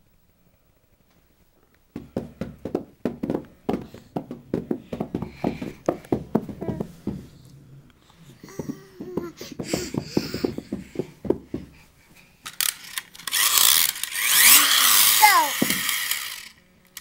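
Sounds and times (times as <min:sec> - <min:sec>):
children making short sharp sounds: 0:14.4 - 0:16.0.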